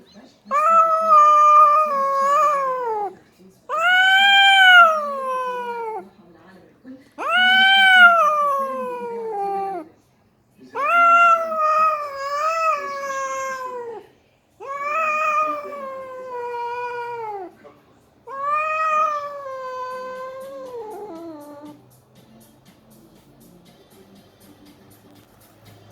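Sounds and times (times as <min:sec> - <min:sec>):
cat yowling in a fight: 0:00.5 - 0:06.0, 0:07.2 - 0:09.9, 0:10.8 - 0:14.0, 0:14.6 - 0:17.5, 0:18.3 - 0:21.8.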